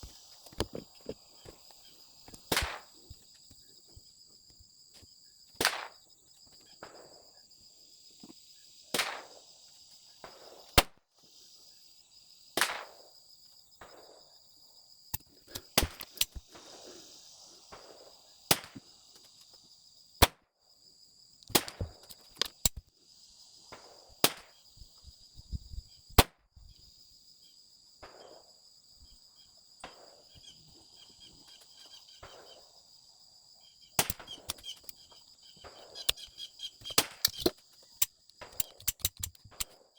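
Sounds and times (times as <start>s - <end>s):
insects buzzing: 0.0s - 39.9s
pistol shots cracking: 34.0s - 35.0s, 35.6s - 37.6s.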